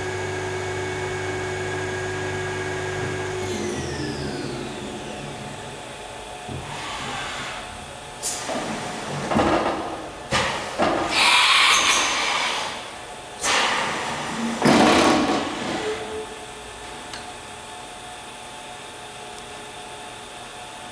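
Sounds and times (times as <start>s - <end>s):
machine hissing bursts: 3.4s - 16.5s.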